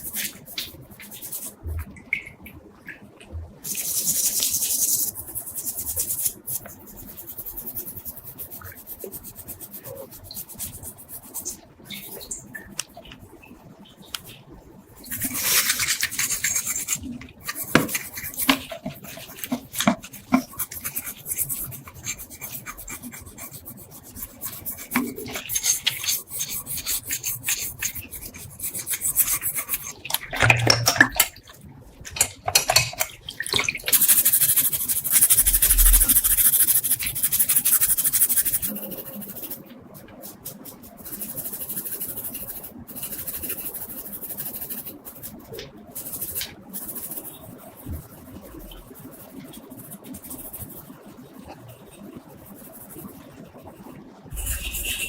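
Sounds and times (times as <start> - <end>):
hand scraping metal: 54.3 - 55.0.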